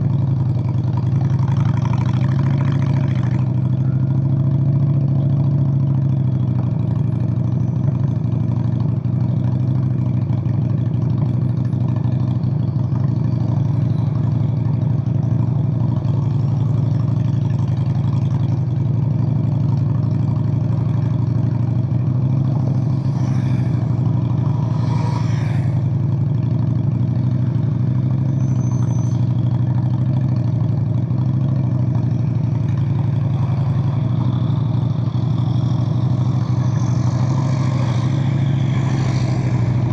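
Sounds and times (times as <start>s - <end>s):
motorcycle engine deep exhaust: 0.0s - 39.9s.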